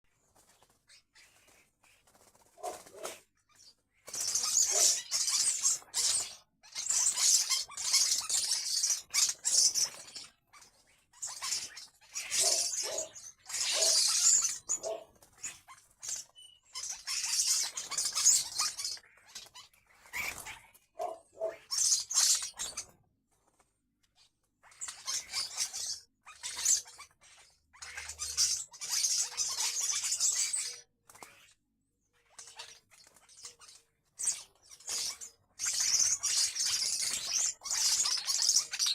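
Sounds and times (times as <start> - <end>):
birds harsh scratchy calling: 0.2 - 23.0, 24.1 - 31.6, 32.2 - 38.9.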